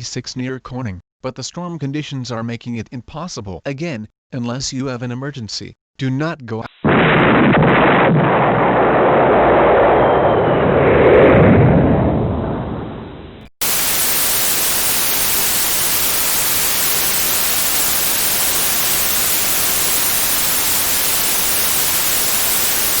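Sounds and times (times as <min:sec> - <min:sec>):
explosion: 0:06.8 - 0:23.0
broadcast static hiss: 0:13.6 - 0:23.0.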